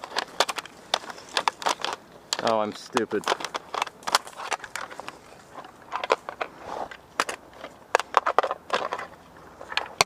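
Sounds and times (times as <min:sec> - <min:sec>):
crunching and crackling: 0:00.0 - 0:10.0.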